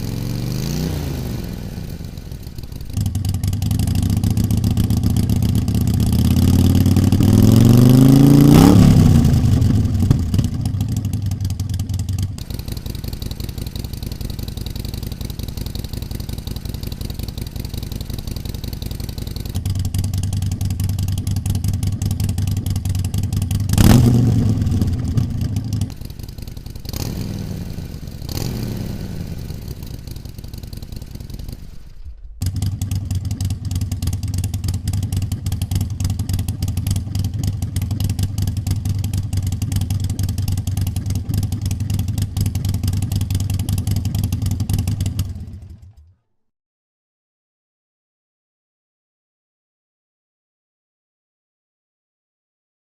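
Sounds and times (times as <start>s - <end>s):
motorcycle engine idling and blipping: 0.0s - 46.2s.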